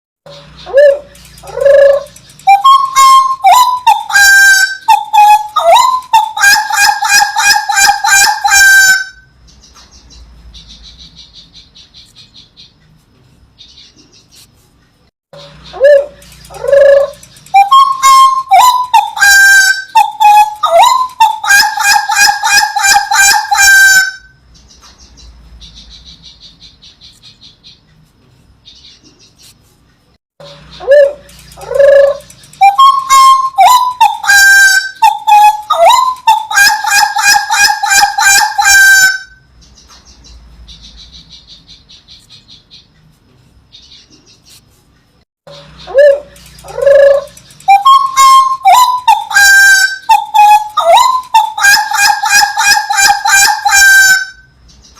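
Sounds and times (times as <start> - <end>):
bird chatter: 0.5 - 8.5, 15.5 - 23.6, 30.6 - 38.7, 45.7 - 54.9.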